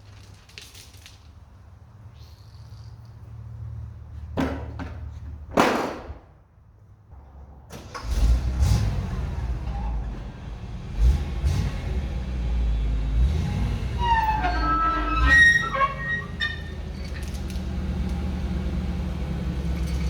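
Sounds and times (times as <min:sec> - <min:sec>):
motor engine rumbling: 0:09.3 - 0:20.0.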